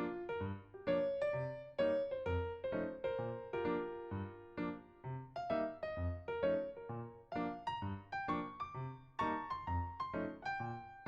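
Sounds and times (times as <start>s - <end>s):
keyboard playing simple melody: 0.0s - 11.0s.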